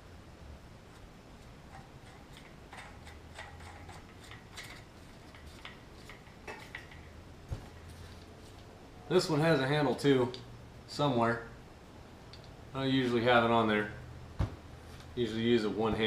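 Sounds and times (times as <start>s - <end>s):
light clicks and metallic taps: 12.3s - 12.6s.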